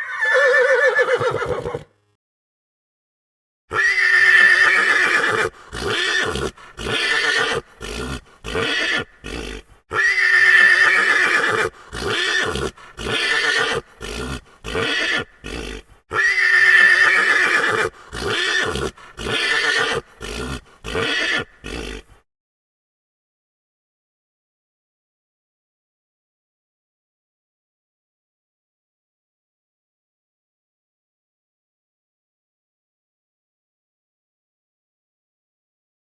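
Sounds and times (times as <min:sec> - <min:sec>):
horse neighing: 0:00.0 - 0:01.9, 0:03.7 - 0:22.1.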